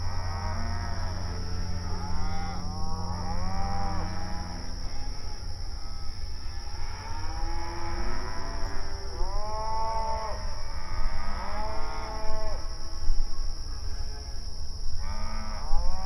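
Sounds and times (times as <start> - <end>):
low rumble: 0.0 - 7.2
cows mooing: 0.0 - 10.4.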